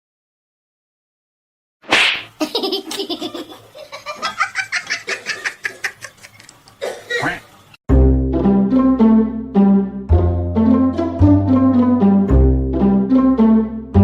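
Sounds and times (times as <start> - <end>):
person laughing: 2.4 - 7.4.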